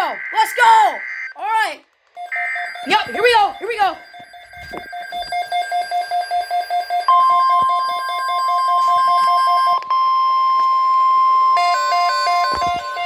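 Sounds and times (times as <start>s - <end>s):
steady warning alarm tone: 0.0s - 1.4s, 2.2s - 13.0s
stepping electronic alert melody: 2.2s - 5.2s.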